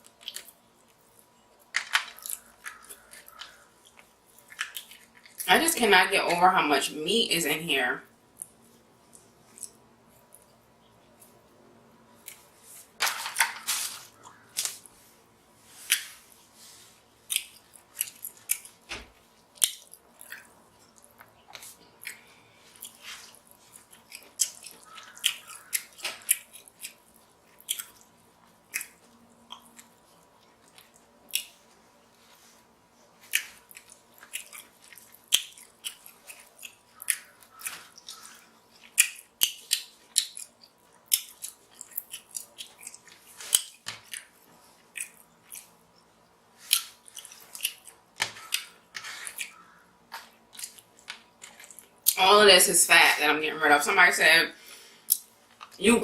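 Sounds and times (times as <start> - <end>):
wet chewing and lip-smacking: 0.0 - 5.4, 8.3 - 11.4, 17.2 - 31.8, 33.1 - 52.2.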